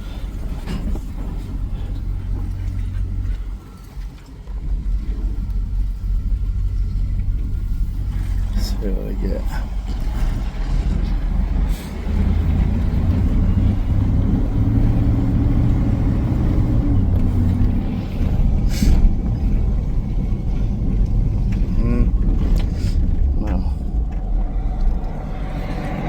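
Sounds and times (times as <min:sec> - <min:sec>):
pickup truck engine rumble: 0:00.0 - 0:26.0.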